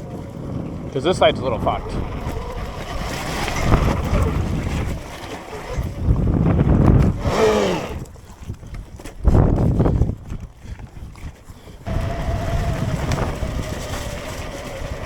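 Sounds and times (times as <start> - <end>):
rumbling from riding over dirt: 0.0 - 11.1, 11.8 - 15.0
wind buffeting microphone: 0.0 - 15.0
electric motor whine: 6.9 - 8.2, 11.9 - 15.0.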